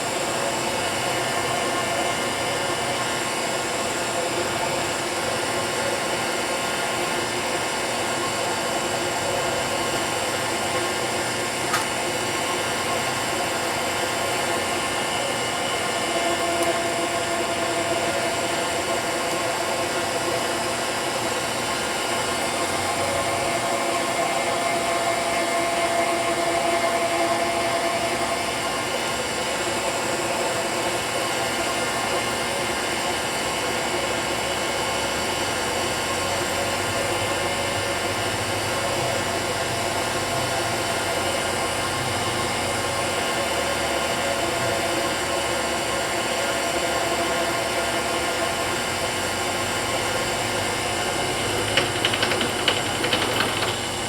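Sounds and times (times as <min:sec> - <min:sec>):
cnc mill cutting metal: 0:00.0 - 0:54.0.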